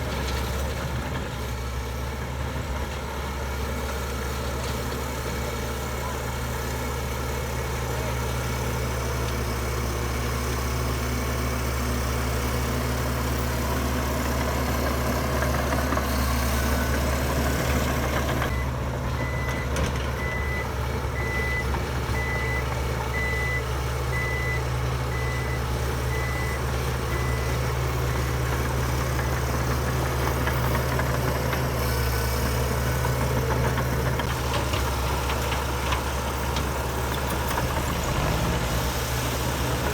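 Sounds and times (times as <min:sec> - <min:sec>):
heavy diesel engines running: 0:00.0 - 0:39.9
reversing alarm beeping: 0:16.0 - 0:29.8.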